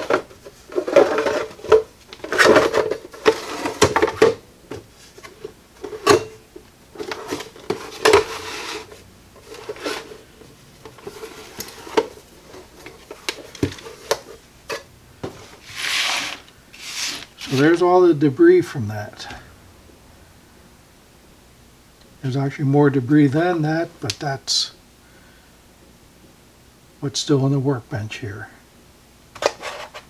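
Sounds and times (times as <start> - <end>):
metal knocking and scraping on case: 0.0 - 6.4.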